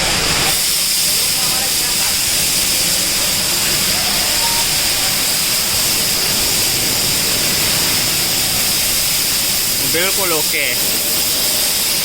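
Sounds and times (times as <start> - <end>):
loud steady hiss: 0.0 - 12.0.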